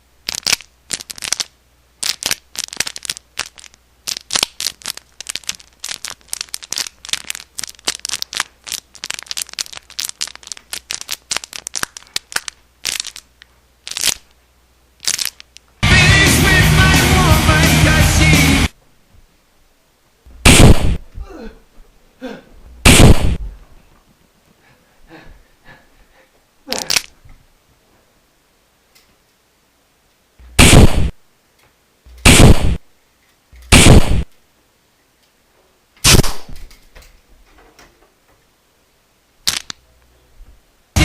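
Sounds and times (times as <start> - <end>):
gunshot bangs: 20.4 - 21.0, 22.9 - 23.4, 30.6 - 31.1, 32.2 - 32.8, 33.7 - 34.2.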